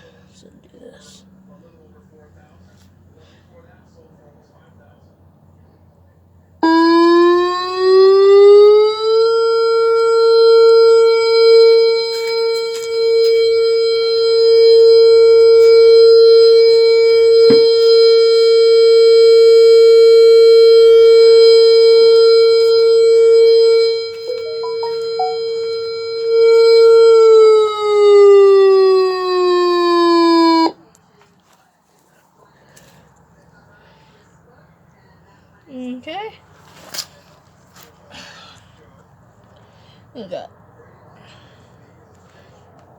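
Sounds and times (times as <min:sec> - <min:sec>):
electronic warning siren: 0:06.6 - 0:30.8.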